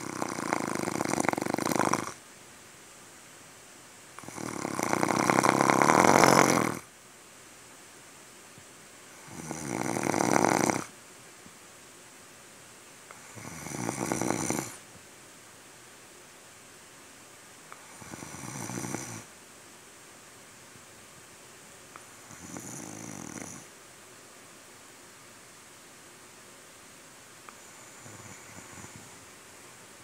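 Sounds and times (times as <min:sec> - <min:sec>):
person snoring: 0:00.0 - 0:02.2, 0:04.2 - 0:06.9, 0:09.1 - 0:10.9, 0:13.1 - 0:14.8, 0:17.8 - 0:19.3, 0:22.0 - 0:23.7, 0:27.5 - 0:29.2.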